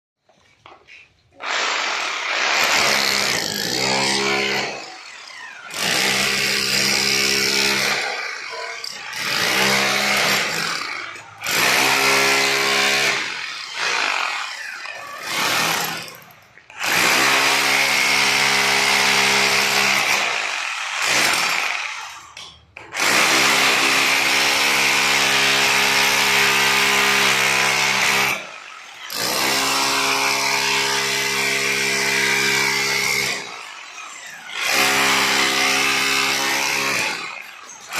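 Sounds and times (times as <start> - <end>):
angle grinder grinding metal: 1.4 - 13.3.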